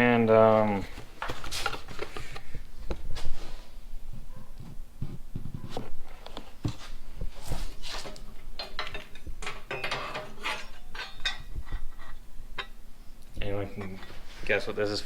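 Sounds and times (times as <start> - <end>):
packaging rustling: 0.5 - 3.8.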